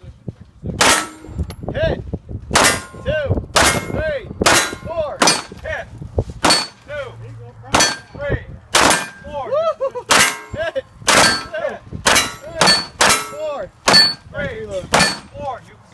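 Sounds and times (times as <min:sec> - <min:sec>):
ringing metal clang: 0:00.8 - 0:01.6, 0:02.6 - 0:05.6, 0:06.4 - 0:06.9, 0:07.7 - 0:08.2, 0:08.8 - 0:09.3, 0:10.1 - 0:14.3, 0:14.9 - 0:15.4
pistol shots: 0:02.6 - 0:03.0, 0:03.6 - 0:05.6, 0:08.7 - 0:09.2.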